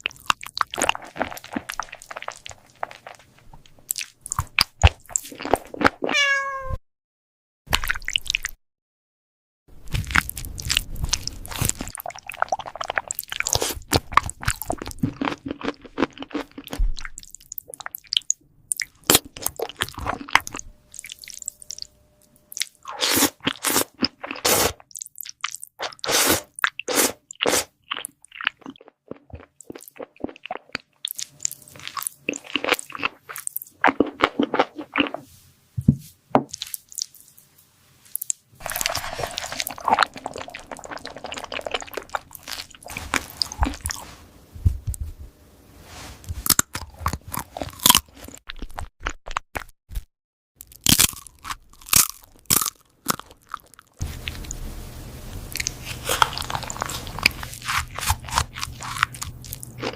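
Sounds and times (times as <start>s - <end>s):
cat crunching food: 55.6s - 59.9s.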